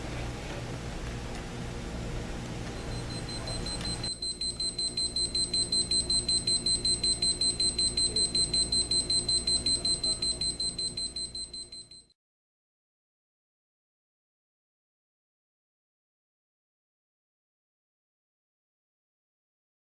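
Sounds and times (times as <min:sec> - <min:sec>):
alarm clock beeping: 0:02.8 - 0:12.1.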